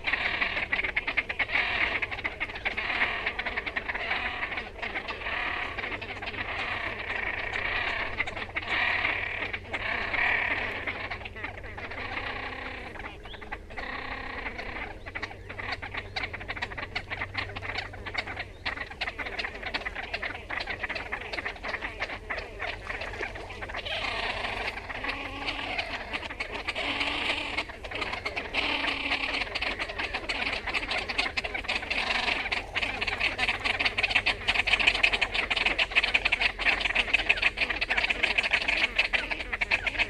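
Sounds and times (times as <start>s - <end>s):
grebe rattling call: 0.0s - 40.0s.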